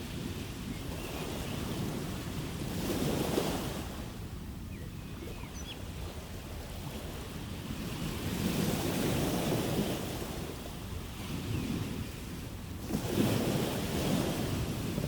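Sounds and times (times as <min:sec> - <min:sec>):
ocean waves breaking: 0:12.7 - 0:15.0.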